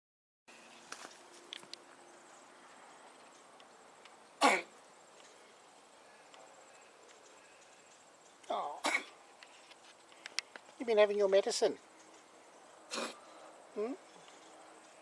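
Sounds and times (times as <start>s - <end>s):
cat coughing: 4.4s - 4.7s, 8.8s - 9.1s, 12.9s - 13.2s.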